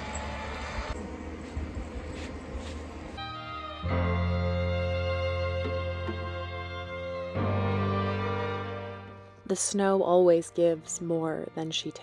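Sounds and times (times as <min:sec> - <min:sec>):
steady noisy rumble: 0:00.0 - 0:03.3
soft background music: 0:01.6 - 0:12.0.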